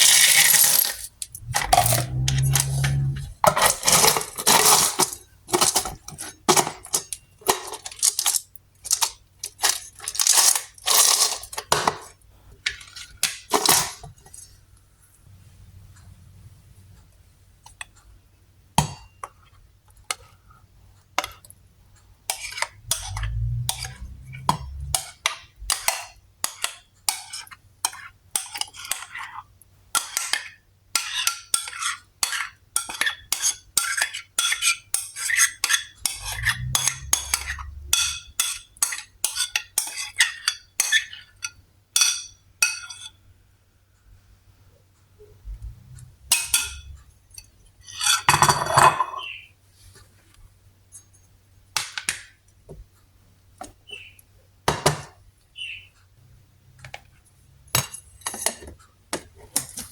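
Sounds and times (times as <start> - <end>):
kitchenware clinking and scraping: 0.0 - 14.6, 22.3 - 43.2, 45.8 - 49.5, 56.9 - 59.9.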